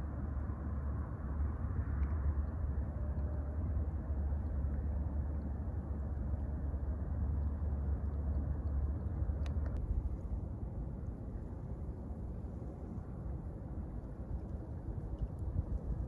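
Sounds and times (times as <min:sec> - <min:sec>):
low outdoor rumble: 0:00.0 - 0:16.0
faint click: 0:09.4 - 0:09.9.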